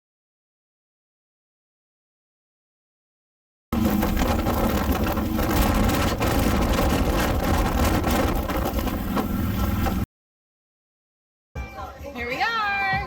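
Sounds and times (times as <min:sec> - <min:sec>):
motorcycle engine running: 0:03.8 - 0:10.0
road and wind noise: 0:03.8 - 0:10.1.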